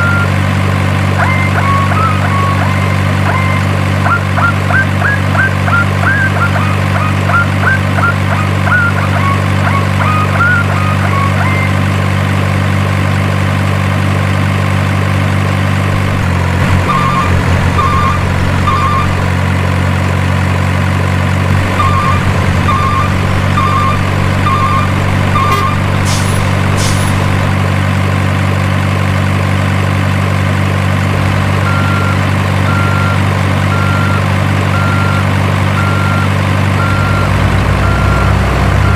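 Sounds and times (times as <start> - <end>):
reversing beeps: 0.0 - 0.4, 1.2 - 11.8, 16.8 - 19.4, 21.6 - 27.6, 31.6 - 38.9
diesel truck engine idling: 0.0 - 38.9
regular beeping: 1.2 - 11.8, 15.8 - 19.4, 21.5 - 27.8, 31.6 - 35.2, 35.8 - 38.9.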